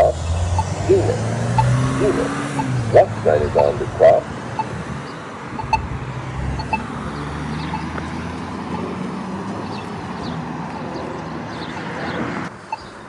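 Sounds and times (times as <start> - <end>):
crosswalk button ticking: 0.0 - 8.9
road traffic: 0.0 - 13.0.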